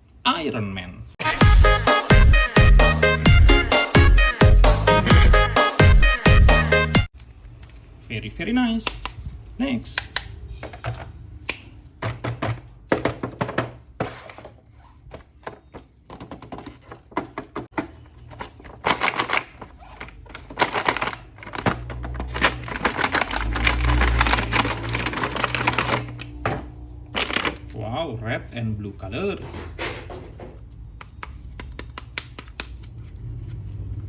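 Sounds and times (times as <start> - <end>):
packaging crackling and rustling: 17.7 - 26.4, 27.1 - 27.8.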